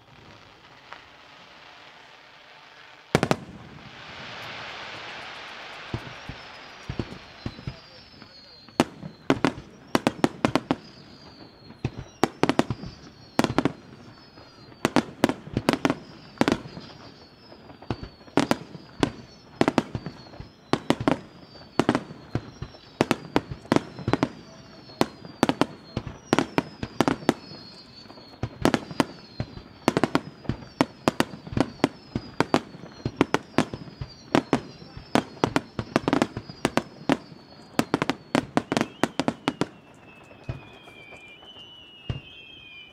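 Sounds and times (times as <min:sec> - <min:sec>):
falling firework whistles: 0:00.0 - 0:42.9
firework shells bursting: 0:03.1 - 0:24.4.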